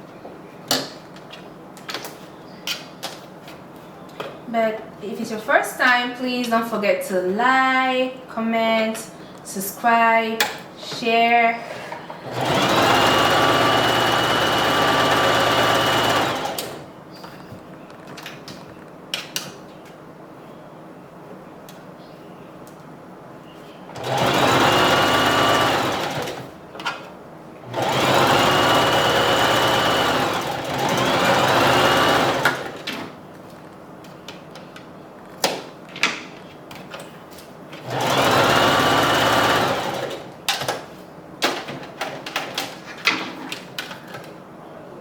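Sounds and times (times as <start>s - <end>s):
sewing machine running: 12.2s - 16.9s, 24.0s - 26.5s, 27.6s - 32.9s, 37.8s - 40.3s.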